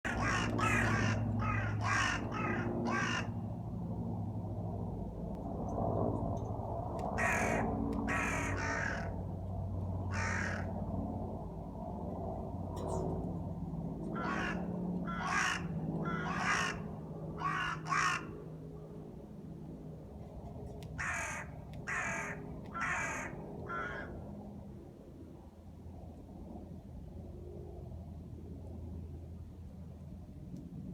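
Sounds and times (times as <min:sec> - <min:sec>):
crow cawing: 0:00.1 - 0:03.4, 0:07.2 - 0:09.2, 0:10.1 - 0:10.8, 0:14.1 - 0:18.4, 0:21.0 - 0:24.2.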